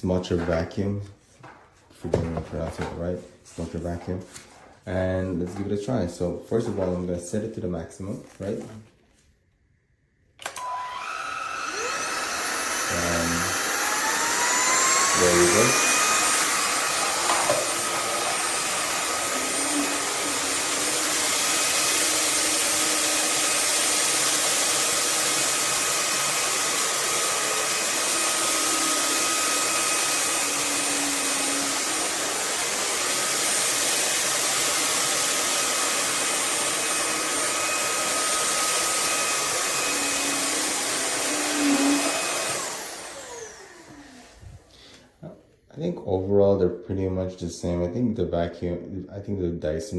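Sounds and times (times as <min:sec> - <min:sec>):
vacuum motor winding down: 0:10.4 - 0:44.7
stick vacuum whining: 0:10.4 - 0:45.1.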